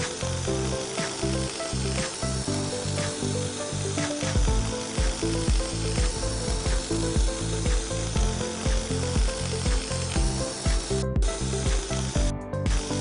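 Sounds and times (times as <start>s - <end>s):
background music with steady beat: 0.0s - 13.0s.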